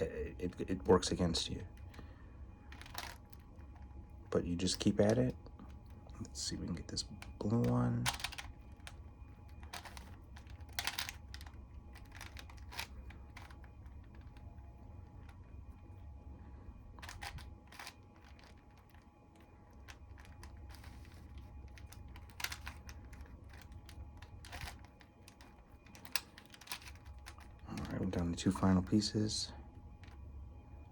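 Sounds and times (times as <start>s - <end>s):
puzzle cube twisting clicks: 2.7s - 3.4s, 7.1s - 14.4s, 17.0s - 27.9s.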